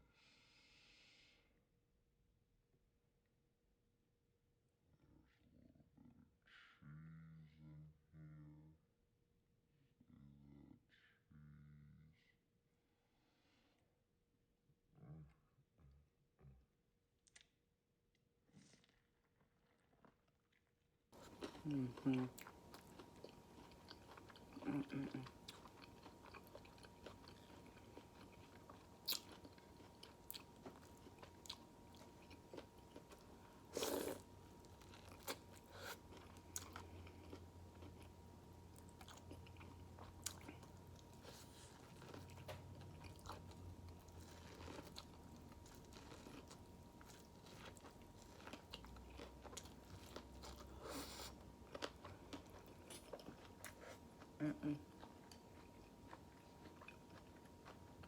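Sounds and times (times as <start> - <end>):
person chewing and biting food: 21.2 - 58.0.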